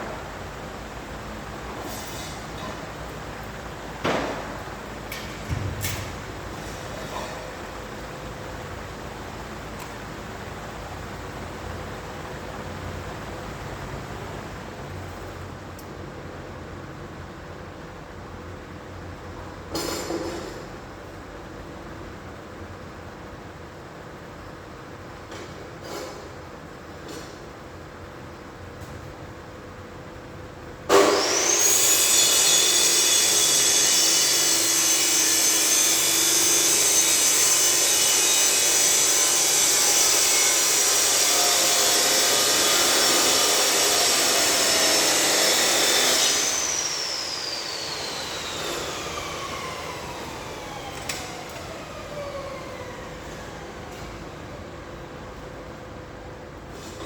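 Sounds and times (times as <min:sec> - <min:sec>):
angle grinder whining: 0:30.9 - 0:54.6.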